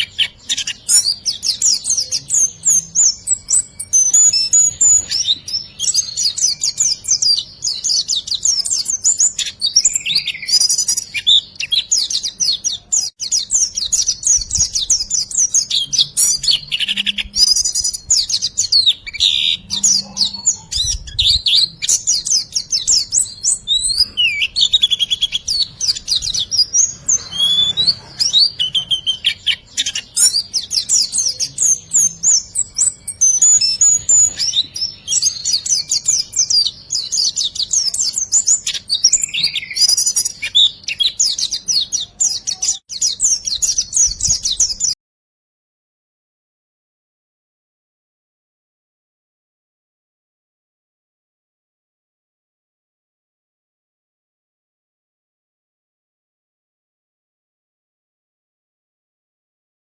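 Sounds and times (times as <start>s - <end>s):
high-pitched bird chirps and trills: 0.0s - 45.0s.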